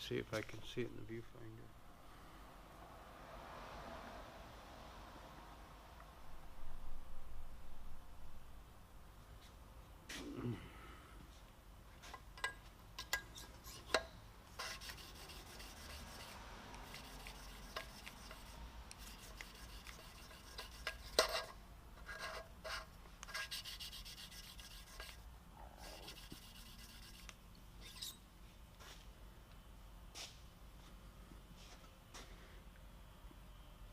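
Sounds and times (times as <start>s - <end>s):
gritty rasping of metal on metal: 13.0s - 25.2s, 25.8s - 28.2s.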